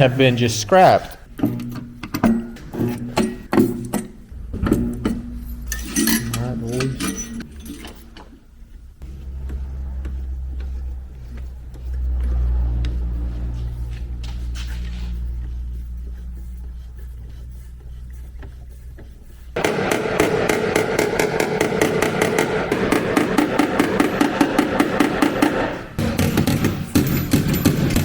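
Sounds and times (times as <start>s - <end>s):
low rumble: 9.0s - 18.0s
rapid hammer strikes on metal: 19.6s - 28.0s.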